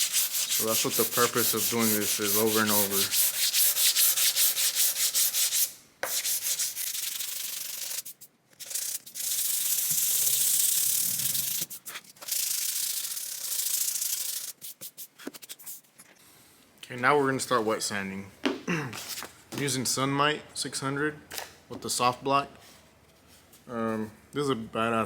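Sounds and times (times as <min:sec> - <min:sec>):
sandpaper rubbing on metal panel: 0:00.0 - 0:15.6.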